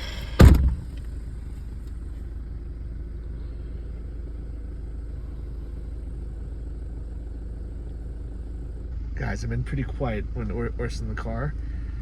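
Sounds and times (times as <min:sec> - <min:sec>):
car driving over dirt track: 0:00.0 - 0:02.9.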